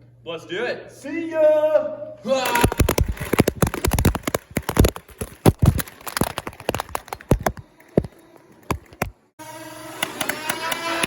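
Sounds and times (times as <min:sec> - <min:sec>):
sharp knocks and thuds: 0:02.5 - 0:09.2.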